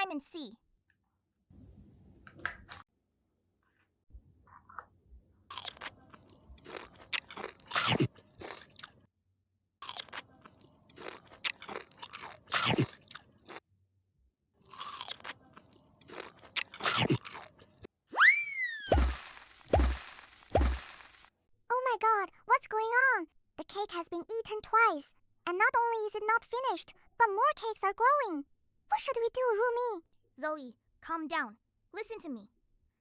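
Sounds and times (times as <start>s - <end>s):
crunchy chewing: 5.5s - 9.1s, 9.8s - 13.6s, 14.6s - 17.9s, 18.9s - 21.3s.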